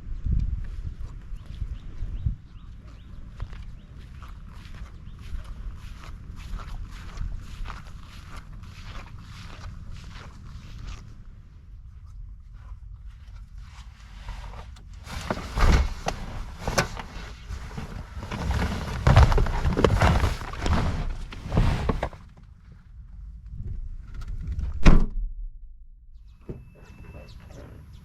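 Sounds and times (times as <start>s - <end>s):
gear rustling and knocking: 12.5s - 22.6s
sharp thunk: 24.8s - 25.4s.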